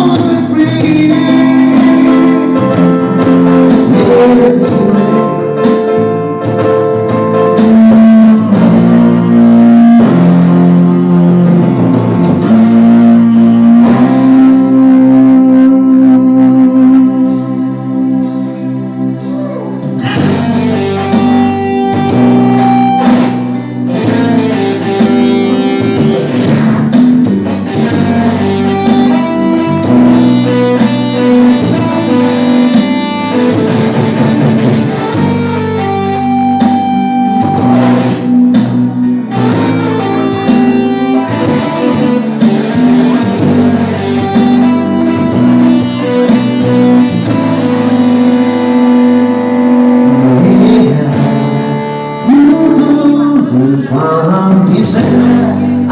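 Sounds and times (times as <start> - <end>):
lead guitar: 0.0 - 55.9
live band playing instrumental: 0.0 - 55.9.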